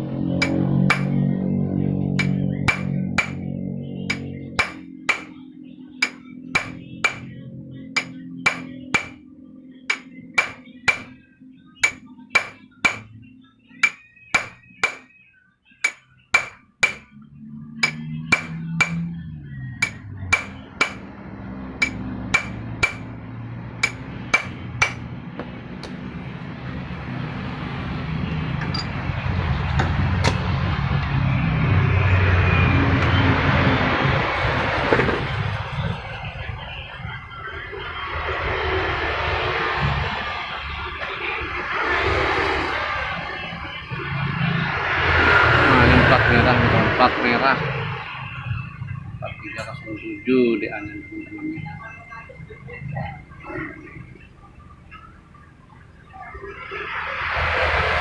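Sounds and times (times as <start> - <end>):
hammer tapping on metal: 0.4 - 1.2, 2.2 - 3.5, 4.1 - 5.4, 6.0 - 7.4, 8.0 - 9.2, 9.9 - 11.2, 11.8 - 13.2, 13.8 - 15.1, 15.8 - 17.2, 17.8 - 19.1, 19.8 - 21.1, 21.8 - 23.1, 23.8 - 25.1, 25.8 - 26.0.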